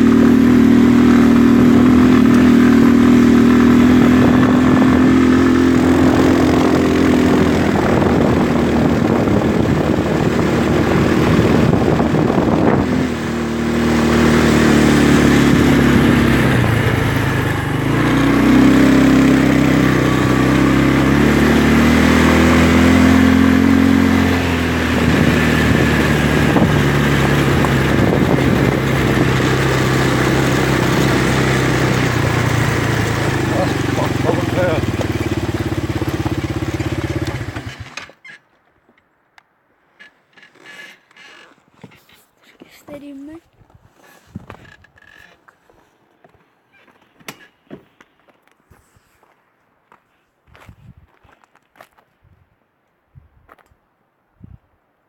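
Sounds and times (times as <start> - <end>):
atv engine revving: 0.0 - 38.3.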